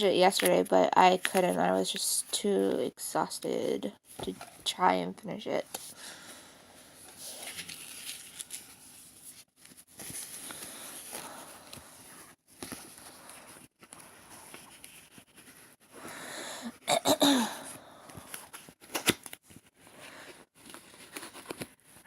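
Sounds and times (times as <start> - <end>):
packaging rustling: 7.1 - 15.7.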